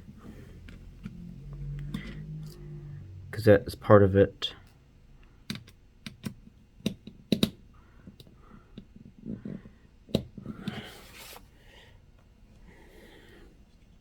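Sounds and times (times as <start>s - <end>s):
screwdriver clicking and tapping: 5.5s - 8.9s.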